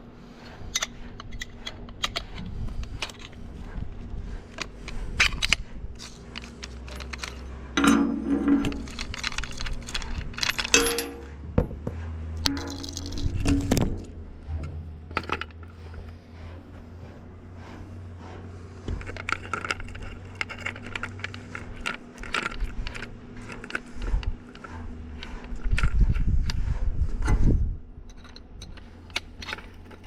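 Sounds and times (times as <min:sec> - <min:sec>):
steady low hum: 0:00.0 - 0:30.0
small metal objects clinking: 0:04.6 - 0:11.4, 0:12.4 - 0:14.1.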